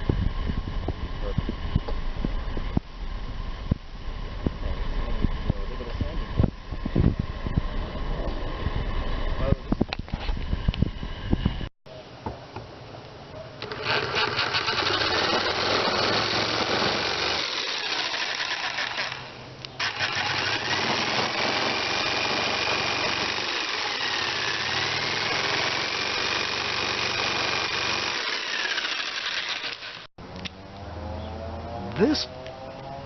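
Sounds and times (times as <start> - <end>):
power tool motor whine on wood: 13.6 - 30.1.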